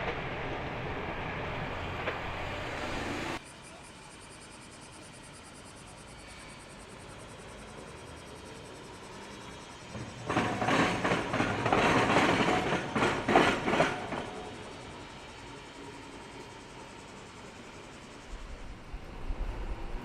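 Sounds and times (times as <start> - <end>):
train wheels clattering on rails: 7.5 - 16.9.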